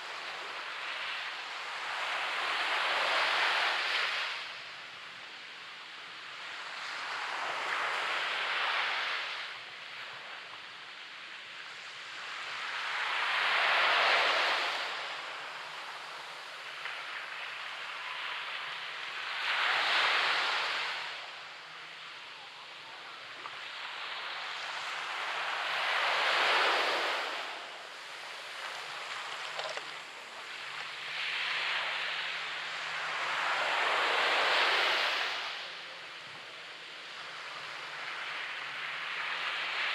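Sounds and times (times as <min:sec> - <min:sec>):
waves breaking on a beach: 0:00.0 - 0:39.9.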